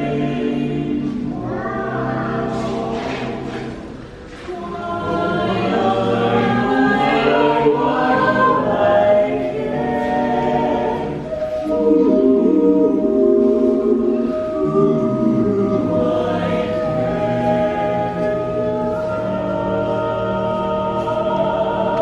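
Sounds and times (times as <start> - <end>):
a cappella ensemble singing: 0.0 - 22.0.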